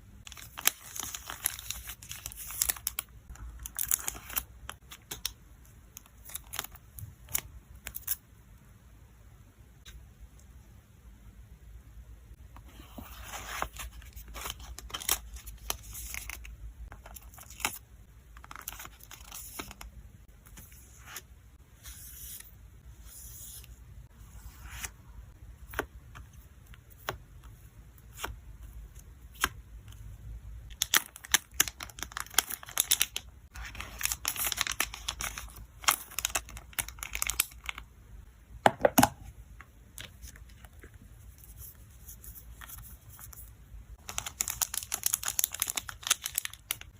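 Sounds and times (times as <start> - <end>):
plastic packaging crinkling: 30.7 - 37.8, 44.0 - 46.9.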